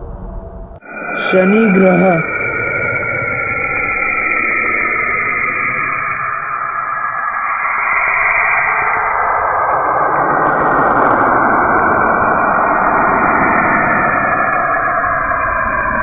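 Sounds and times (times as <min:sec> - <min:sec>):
faint held tones: 0:00.0 - 0:07.8.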